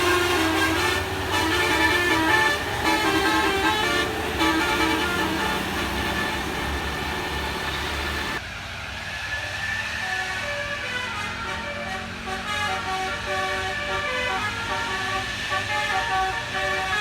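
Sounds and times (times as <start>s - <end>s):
air horn playing a tune: 0.0s - 8.4s, 10.0s - 17.0s
bus engine rumbling: 0.0s - 8.4s.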